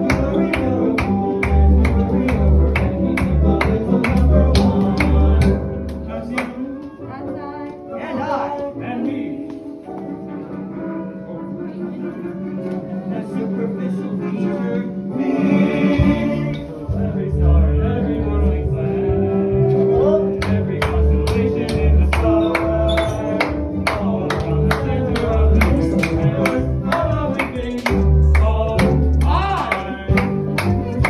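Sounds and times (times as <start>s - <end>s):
percussive beat: 0.0s - 6.6s, 20.4s - 31.0s
song with singing and bass: 0.0s - 9.6s, 12.7s - 31.0s.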